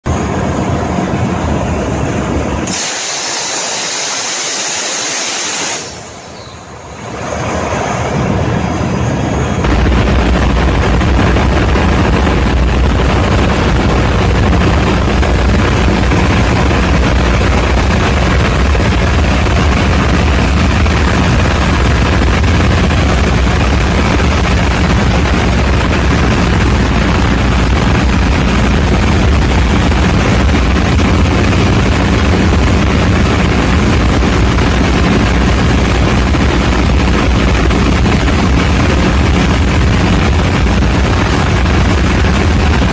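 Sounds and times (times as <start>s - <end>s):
loud hiss: 2.6s - 7.1s
diesel generator rumbling: 5.8s - 42.9s.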